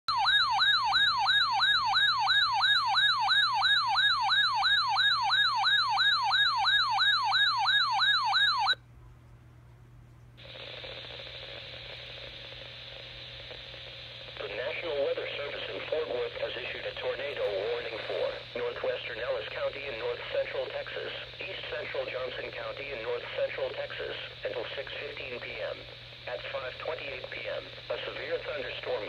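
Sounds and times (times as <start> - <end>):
warbling alarm tone: 0.1 - 8.8
steady radio hiss: 10.4 - 29.0.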